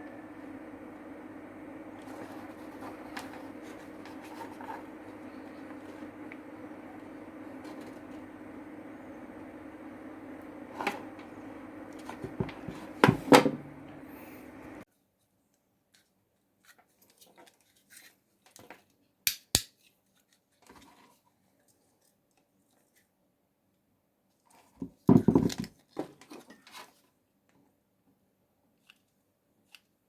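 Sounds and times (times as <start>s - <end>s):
small electric motor humming: 0.0s - 14.8s.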